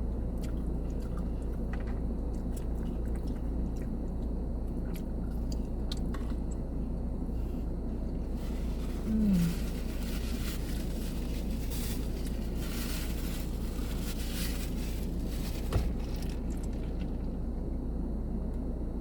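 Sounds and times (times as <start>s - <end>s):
low rumble inside car: 0.0s - 19.0s
chewing food: 0.3s - 6.8s.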